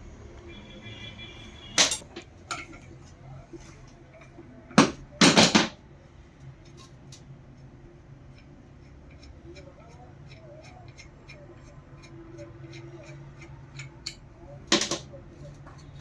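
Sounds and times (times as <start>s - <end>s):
metal parts clanking: 1.8s - 2.8s.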